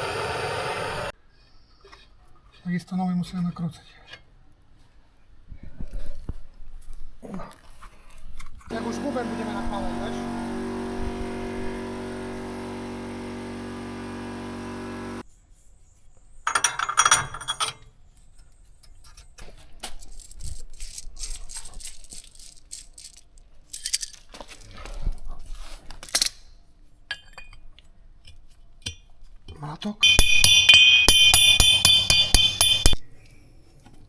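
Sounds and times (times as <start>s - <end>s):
machine hum: 0.0s - 1.1s, 8.7s - 15.2s, 30.0s - 33.0s
metal parts clinking and rattling: 16.5s - 17.9s, 19.8s - 24.8s.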